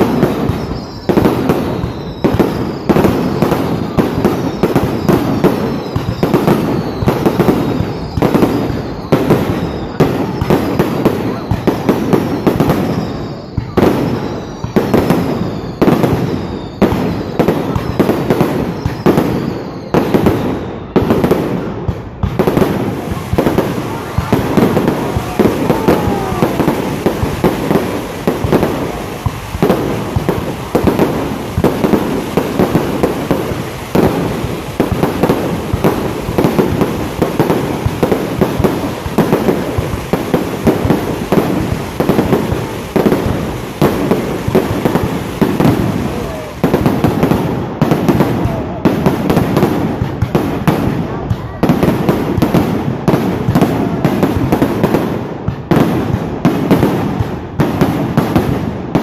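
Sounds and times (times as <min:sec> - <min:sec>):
fireworks bangs: 0:00.0 - 0:59.0.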